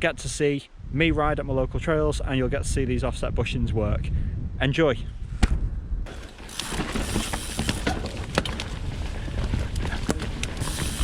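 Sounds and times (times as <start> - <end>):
tyre and wind rush: 0.0 - 11.0
bike chain clicks and rattles: 6.1 - 11.0.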